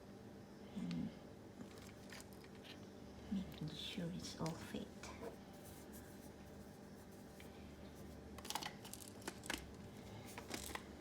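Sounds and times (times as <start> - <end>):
plastic clicks and rattles: 8.4 - 9.8.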